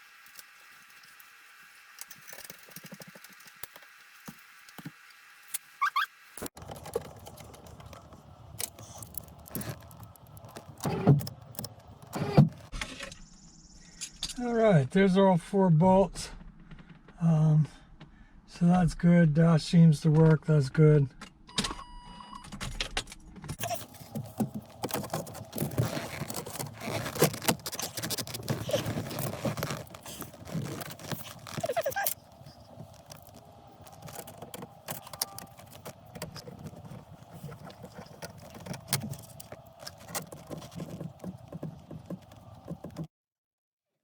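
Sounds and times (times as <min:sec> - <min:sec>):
handling clicks and rattles: 0:06.5 - 0:12.7, 0:23.6 - 0:43.1.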